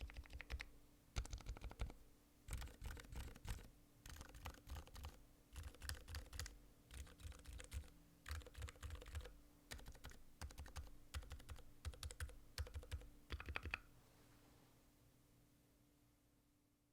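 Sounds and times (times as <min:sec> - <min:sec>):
soft damped keyboard typing: 0:00.0 - 0:13.9.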